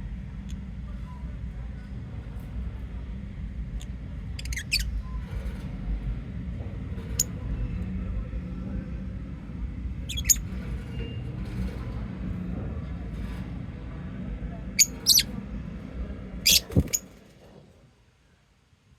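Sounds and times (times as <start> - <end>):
steady low hum: 0.0 - 18.9
lovebirds chirping: 10.1 - 10.4, 14.8 - 15.2, 16.5 - 17.0.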